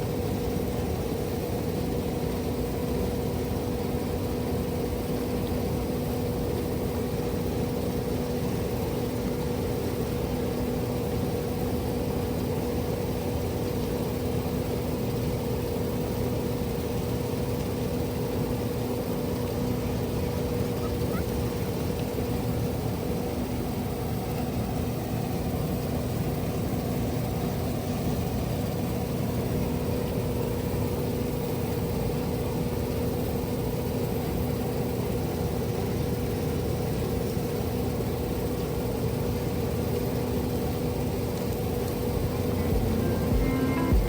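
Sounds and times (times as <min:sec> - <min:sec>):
heavy farm machinery engine: 0:42.1 - 0:44.0.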